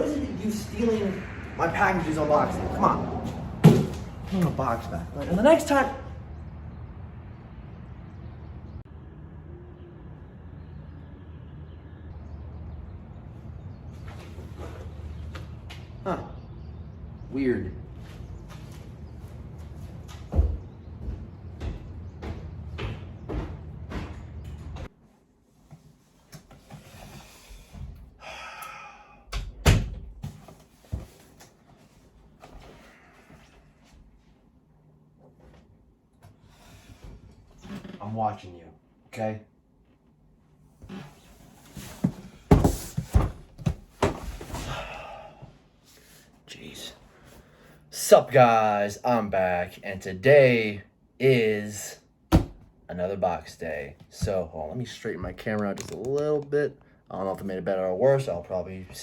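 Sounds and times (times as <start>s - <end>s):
low hum: 0.0s - 4.3s
loud thud: 3.5s - 4.1s.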